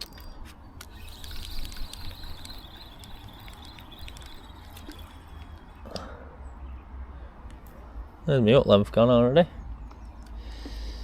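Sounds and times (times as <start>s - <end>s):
river water flowing: 0.9s - 6.1s.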